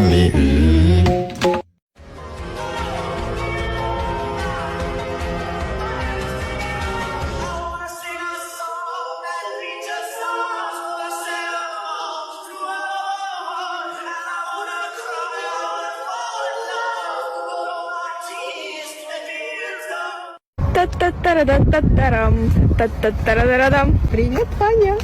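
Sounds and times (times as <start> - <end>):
small choir singing unaccompanied: 2.6 - 20.4.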